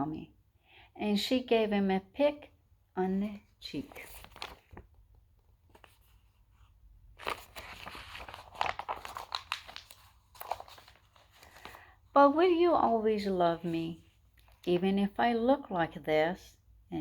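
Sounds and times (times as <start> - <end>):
paper rustling as page turned: 3.7 - 11.9.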